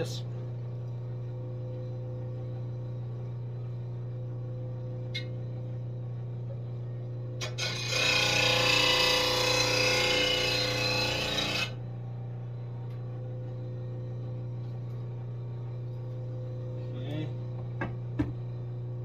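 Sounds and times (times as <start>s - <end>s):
steady hum: 0.0s - 19.0s
blade grinding on sharpener: 7.5s - 11.8s.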